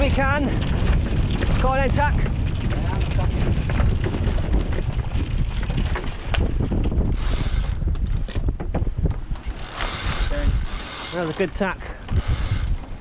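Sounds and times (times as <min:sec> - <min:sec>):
wind rumble on microphone: 0:00.0 - 0:13.0
rope hauled through winch: 0:07.1 - 0:07.8, 0:09.5 - 0:13.0
sharp mechanical clicks: 0:09.6 - 0:12.8.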